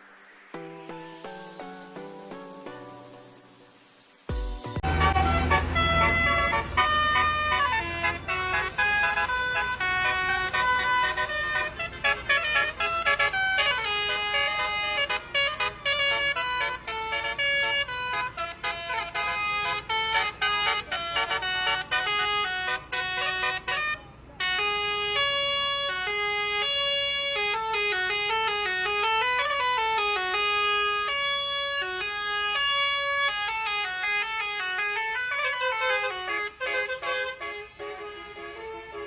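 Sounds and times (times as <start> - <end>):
multi-tone bus horn melody: 0.0 - 39.0.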